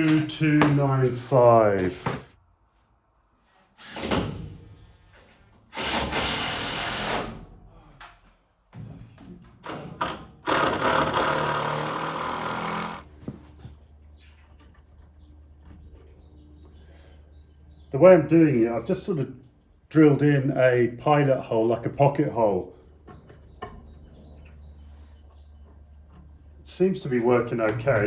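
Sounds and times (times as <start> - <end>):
power tool cutting wood: 5.8 - 7.4, 9.7 - 13.1.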